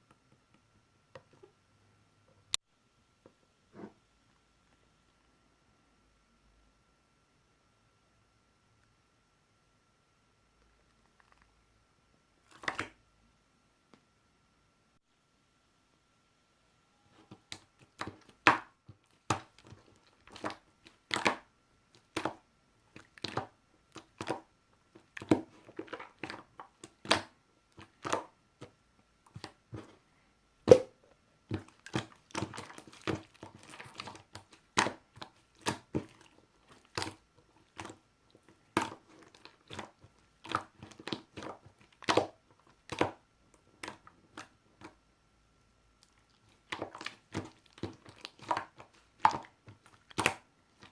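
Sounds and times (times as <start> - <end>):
slime crackling pops: 46.6 - 50.9.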